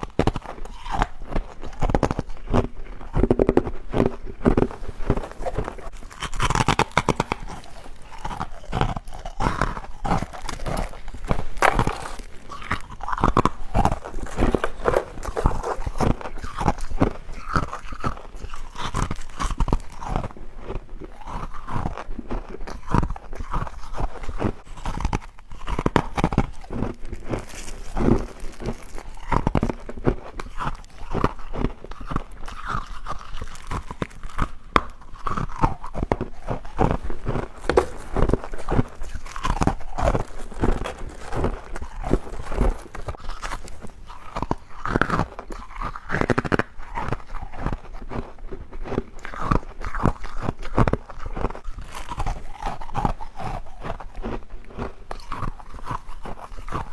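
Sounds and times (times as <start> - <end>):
chewing crunchy frost: 0.0 - 56.9.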